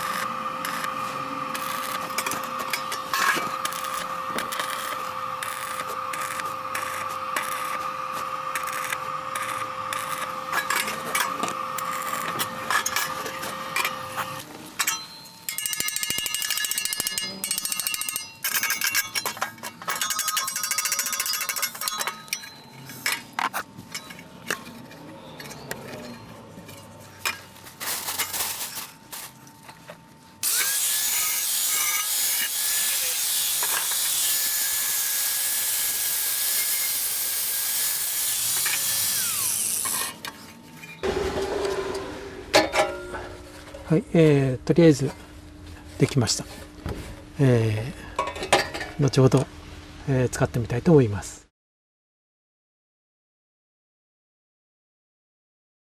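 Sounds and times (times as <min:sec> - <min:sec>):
power tool working steel: 0:00.0 - 0:22.6, 0:30.4 - 0:43.3.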